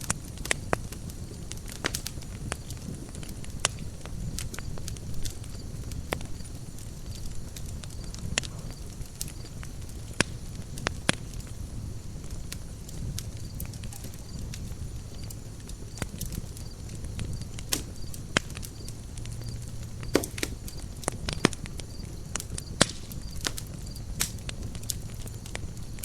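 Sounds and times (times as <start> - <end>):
burning wood popping and snapping: 0.0 - 26.0
low rumble of flames: 0.0 - 26.0.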